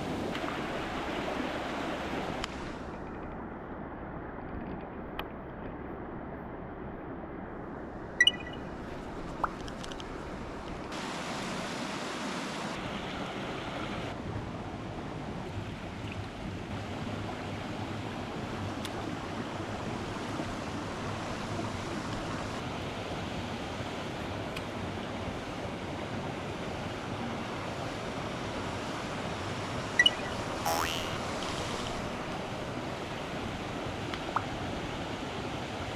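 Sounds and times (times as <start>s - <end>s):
stream water rushing: 0.0s - 2.9s, 10.2s - 14.2s.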